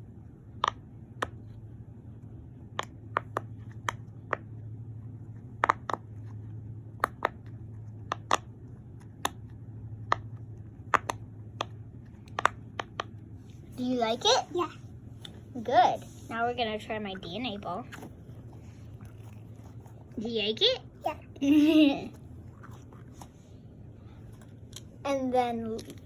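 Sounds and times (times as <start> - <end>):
faint low hum: 0.0 - 26.0.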